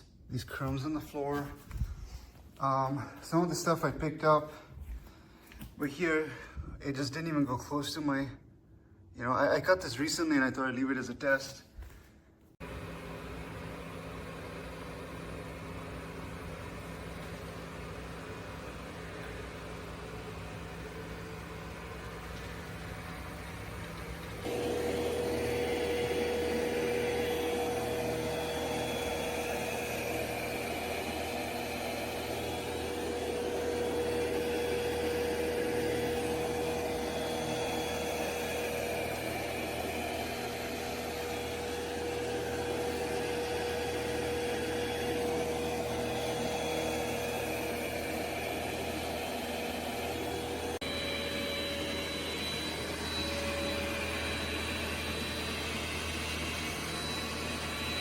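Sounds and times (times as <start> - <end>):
robot vacuum motor whine: 12.6 - 58.0.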